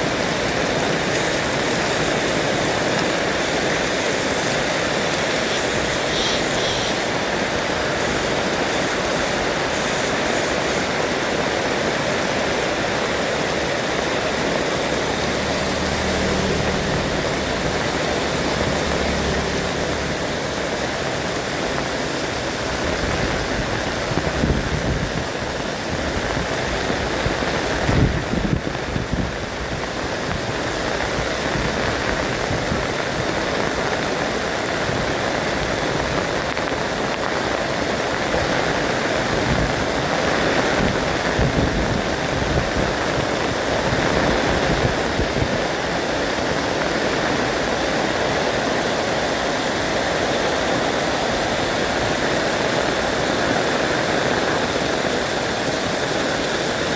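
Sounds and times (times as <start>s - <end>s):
heavy rain pouring: 0.0s - 56.9s.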